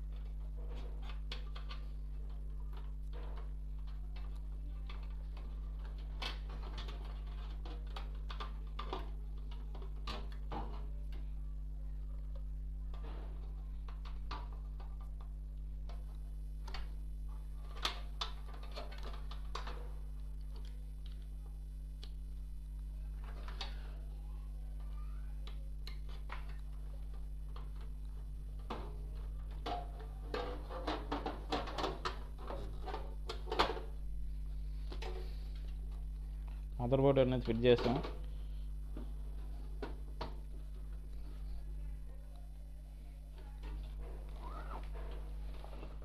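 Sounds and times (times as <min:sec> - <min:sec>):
low electrical hum: 0:00.0 - 0:46.0
computer parts clicking and rattling: 0:17.6 - 0:21.2.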